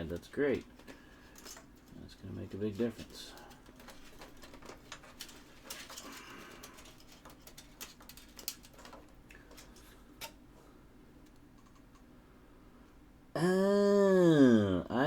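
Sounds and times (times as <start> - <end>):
cables and plastic parts clicking: 0.0 - 10.4, 11.2 - 12.1.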